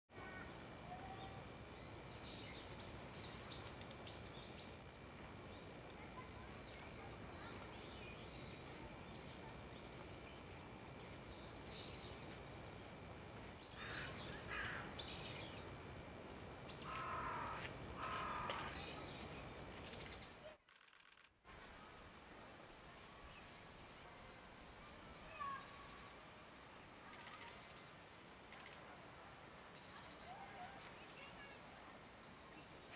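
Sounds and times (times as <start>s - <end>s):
steady background hiss: 0.1s - 20.6s, 21.5s - 32.9s
wild birds calling: 13.2s - 15.9s, 16.6s - 20.4s.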